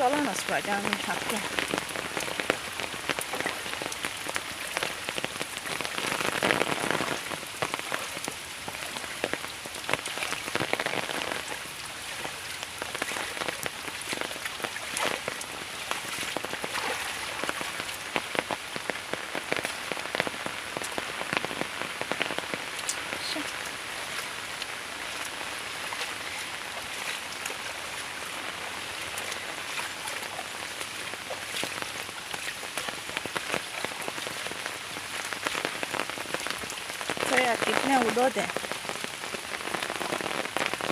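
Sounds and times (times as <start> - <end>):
rain falling: 0.0 - 40.9.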